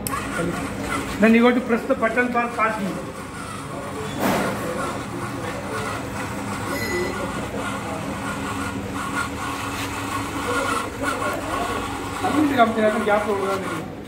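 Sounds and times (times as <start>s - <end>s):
small motors whining: 0.0s - 14.0s.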